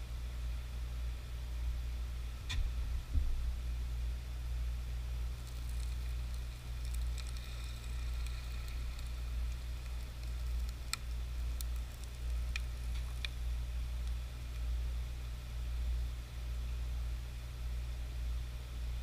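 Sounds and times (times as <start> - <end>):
steady low hum: 0.0 - 19.0
faint sizzling: 4.8 - 16.2
sharp cracks: 5.2 - 14.7.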